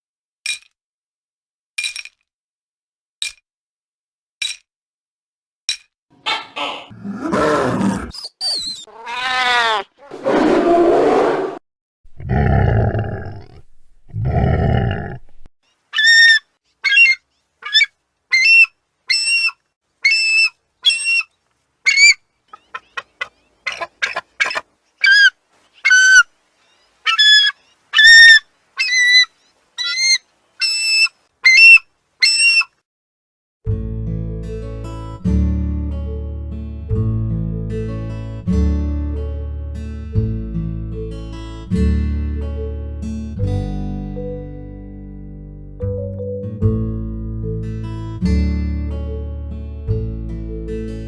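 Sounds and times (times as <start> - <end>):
eagle high-pitched piping calls: 16.0 - 26.3, 27.0 - 32.8.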